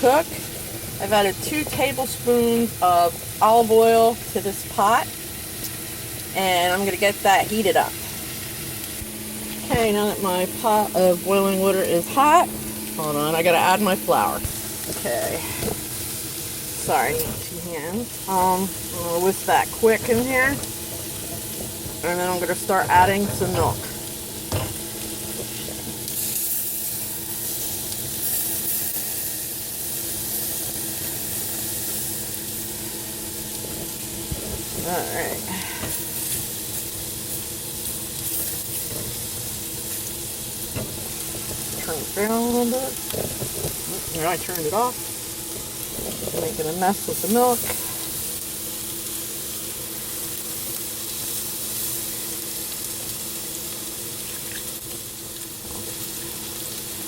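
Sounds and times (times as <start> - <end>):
faint steady hum: 0.0 - 57.0
food sizzling on stovetop: 0.0 - 57.0.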